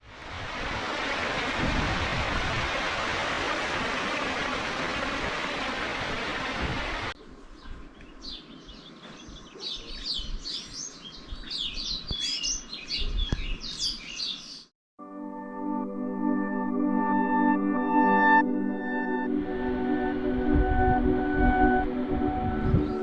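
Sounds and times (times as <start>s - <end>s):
small birds chirping: 7.3s - 14.7s.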